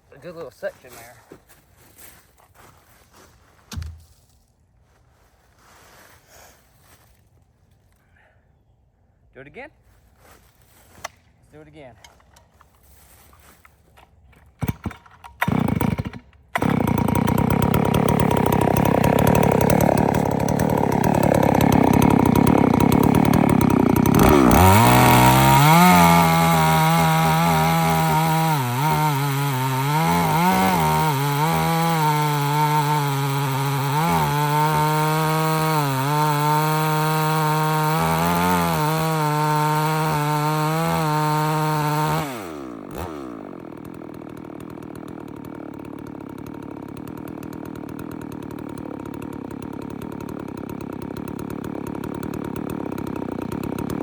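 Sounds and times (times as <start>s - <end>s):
chainsaw pull starts: 11.0s - 54.0s
chainsaw engine cutting: 11.6s - 54.0s.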